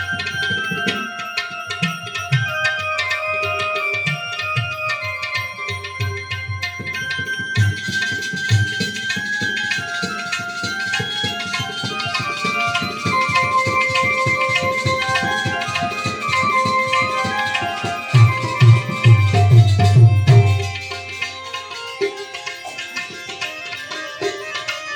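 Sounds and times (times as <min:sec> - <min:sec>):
melody of held notes: 0:00.0 - 0:24.9
hand drum strokes: 0:13.0 - 0:21.3.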